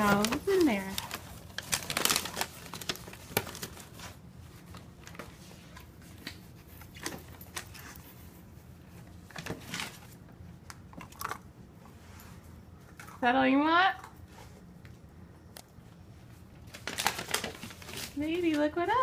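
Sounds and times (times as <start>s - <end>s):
cardboard packaging rustling: 0.0s - 10.2s, 16.6s - 19.0s.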